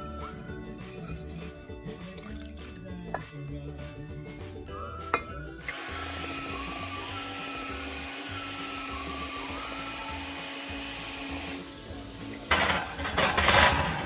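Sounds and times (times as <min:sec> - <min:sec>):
blender motor running: 0:05.6 - 0:12.2.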